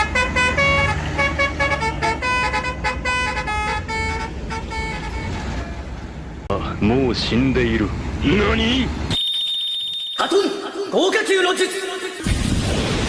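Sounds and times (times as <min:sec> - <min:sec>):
multi-tone bus horn tune: 0:00.0 - 0:06.0.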